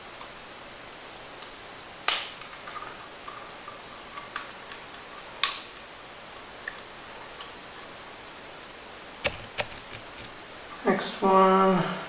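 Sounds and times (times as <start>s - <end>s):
faint steady hiss: 0.0s - 12.0s
small parts clicking on workbench: 2.1s - 5.8s, 9.2s - 10.4s.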